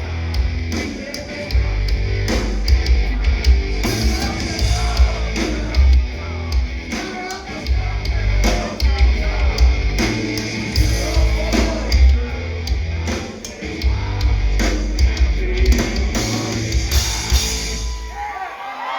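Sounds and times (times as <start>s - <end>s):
live rock band playing: 0.0s - 18.2s
person singing: 3.8s - 10.1s.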